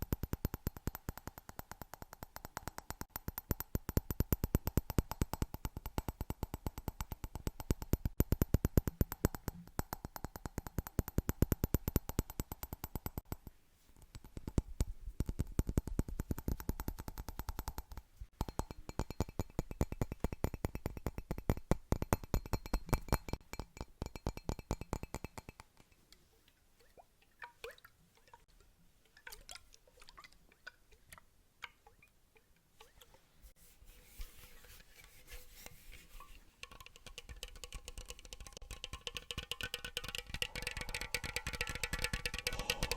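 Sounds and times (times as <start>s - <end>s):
rapid tapping on hard object: 0.0s - 25.9s, 36.6s - 42.9s.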